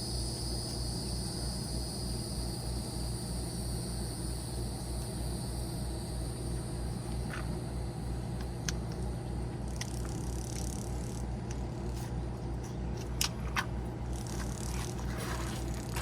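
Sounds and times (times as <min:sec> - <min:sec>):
motor humming: 0:13.0 - 0:16.0.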